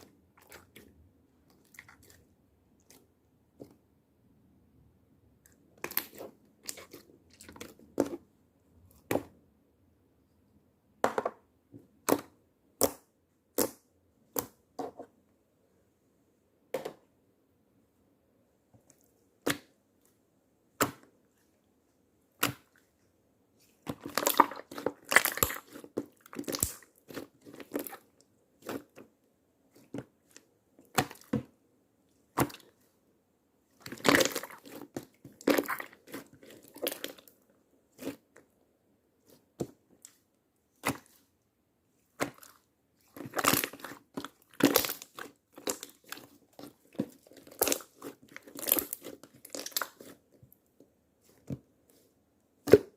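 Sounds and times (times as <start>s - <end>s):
slime popping and crackling: 23.8s - 28.0s, 33.8s - 37.2s, 43.2s - 50.2s.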